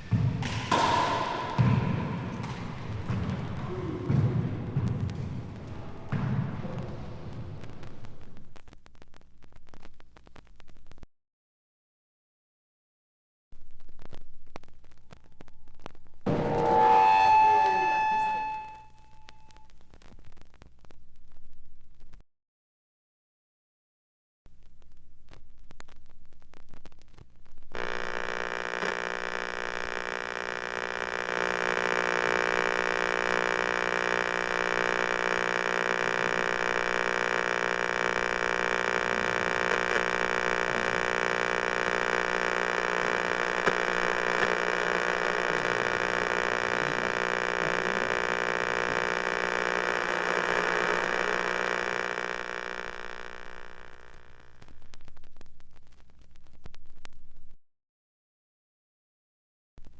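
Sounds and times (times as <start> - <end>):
steady hum of fixed tones: 16.3 - 19.6.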